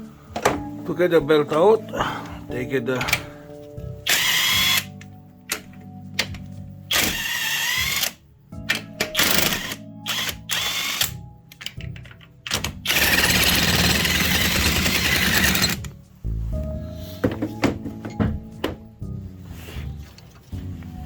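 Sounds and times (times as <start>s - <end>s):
disco background music: 0.0s - 4.2s
power tool motor whine: 4.1s - 4.9s, 12.9s - 15.8s.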